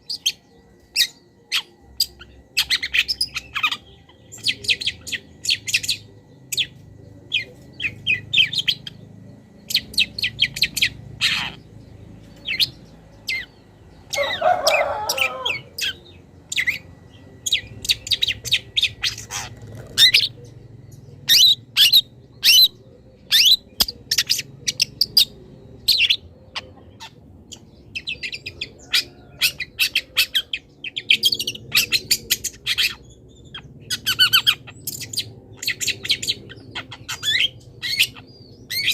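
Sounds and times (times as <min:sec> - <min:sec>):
bird singing chirps and trills: 0:00.0 - 0:38.9
harsh bird call: 0:14.1 - 0:16.0.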